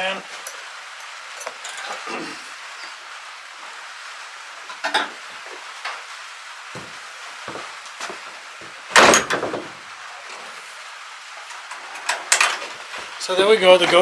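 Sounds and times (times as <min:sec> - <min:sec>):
knocks and clatters: 0:06.8 - 0:09.8.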